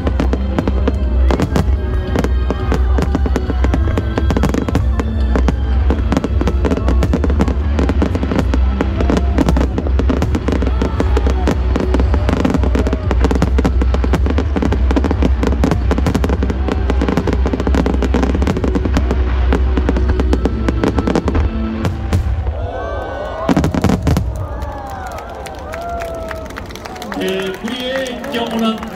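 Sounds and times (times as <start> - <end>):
fireworks bangs and crackles: 0.0 - 28.9.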